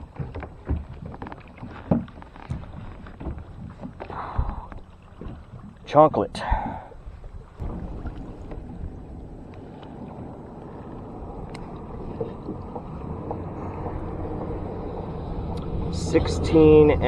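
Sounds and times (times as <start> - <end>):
wind noise on microphone: 6.4 - 17.0
faint clicks: 10.9 - 14.0.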